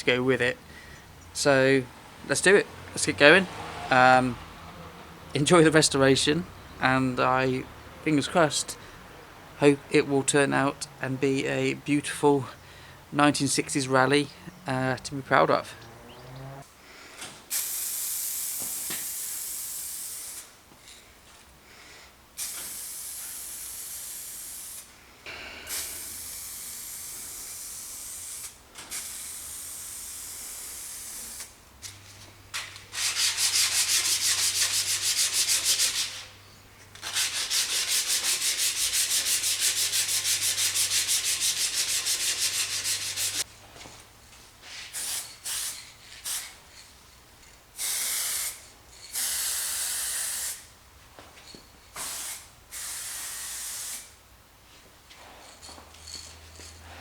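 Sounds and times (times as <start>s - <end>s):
rough rubbing on metal: 32.7s - 36.4s, 37.0s - 43.5s.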